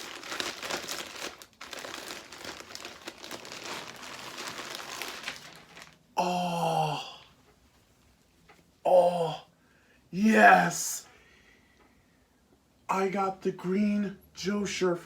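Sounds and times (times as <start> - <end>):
packaging crinkling and rustling: 0.0 - 6.1
person saying ohh: 6.2 - 7.3, 8.8 - 9.5, 10.2 - 11.0.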